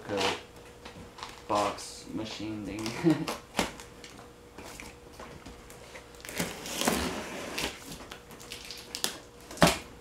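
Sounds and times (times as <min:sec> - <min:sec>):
cardboard and packing crinkling: 0:02.7 - 0:09.8.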